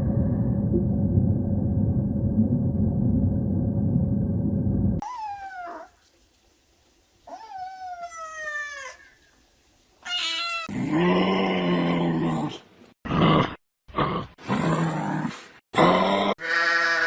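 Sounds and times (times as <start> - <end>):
animal calls: 5.0 - 6.0, 7.3 - 9.4, 16.4 - 17.0.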